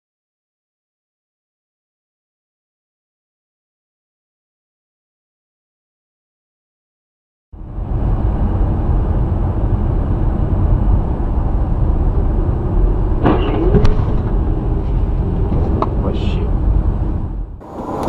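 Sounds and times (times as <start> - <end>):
vehicle road noise rumbling: 7.6 - 18.0.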